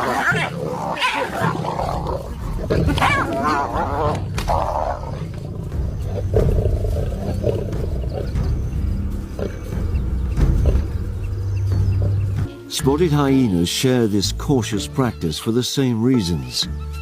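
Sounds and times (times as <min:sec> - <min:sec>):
lion growling and roaring: 0:00.0 - 0:11.2.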